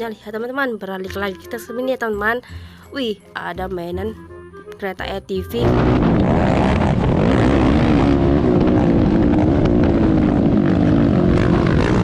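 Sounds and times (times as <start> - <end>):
atv engine running: 5.6 - 12.0.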